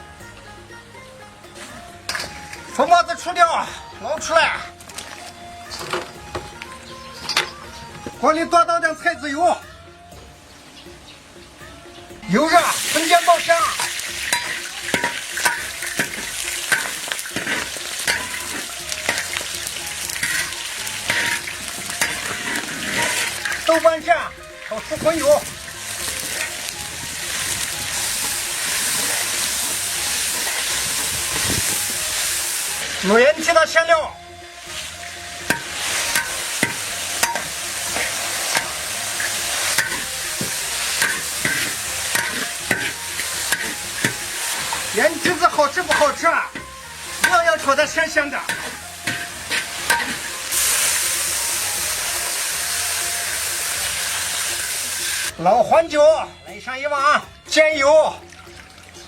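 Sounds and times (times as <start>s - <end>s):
food sizzling in a wok: 0.0s - 4.0s, 10.8s - 55.4s
spatula scraping and knocking pan: 12.7s - 33.1s, 34.6s - 52.0s.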